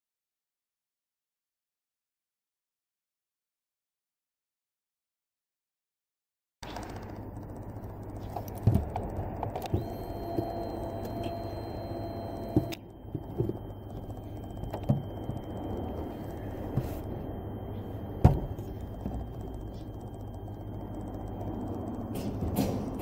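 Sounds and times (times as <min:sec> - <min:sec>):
low background hum: 0:06.6 - 0:23.0
small parts clicking and knocking: 0:06.6 - 0:23.0
faint high whine: 0:06.7 - 0:23.0.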